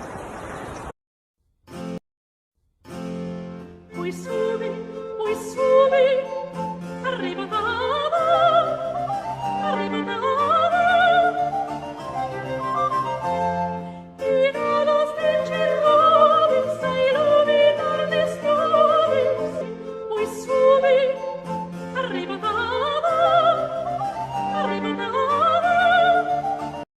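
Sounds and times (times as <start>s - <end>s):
operatic singing with vibrato: 4.0s - 13.2s, 14.2s - 26.8s.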